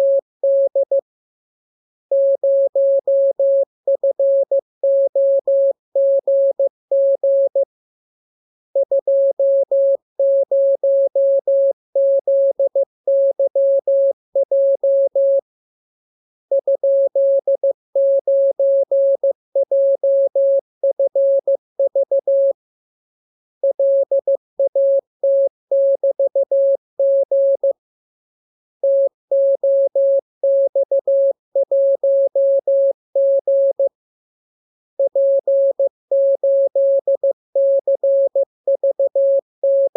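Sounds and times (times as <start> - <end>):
morse code tone: 0.0 - 1.0, 35.0 - 39.9.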